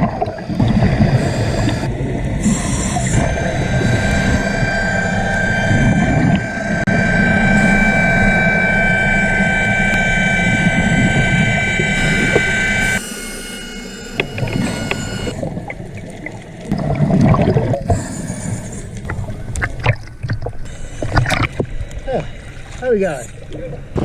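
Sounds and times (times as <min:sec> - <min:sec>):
boat engine whining hum: 0:00.0 - 0:24.0.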